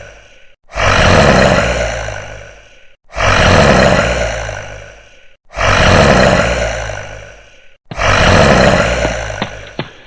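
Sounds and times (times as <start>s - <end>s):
loud rough sound effect: 7.9s - 9.9s.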